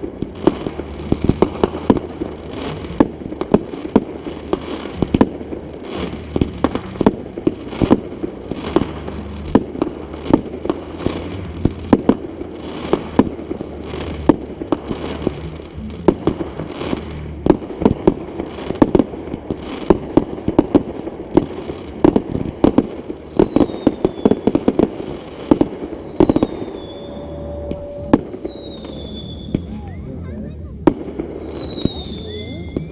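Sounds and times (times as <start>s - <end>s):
fireworks bangs and crackles: 0.0s - 32.9s
falling firework whistles: 21.8s - 30.0s, 30.8s - 32.9s.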